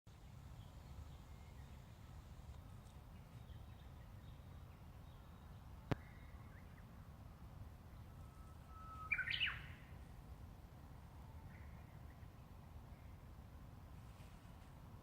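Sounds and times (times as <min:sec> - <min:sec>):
bush warbler singing: 0:00.1 - 0:07.0, 0:07.7 - 0:10.0.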